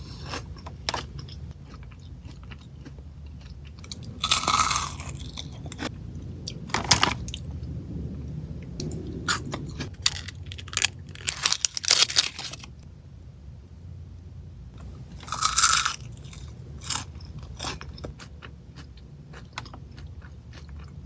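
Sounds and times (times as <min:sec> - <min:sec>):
quiet chewing: 0:00.0 - 0:07.7, 0:14.8 - 0:21.0
chocolates being crunched: 0:00.2 - 0:05.9, 0:09.7 - 0:12.8, 0:15.2 - 0:18.1.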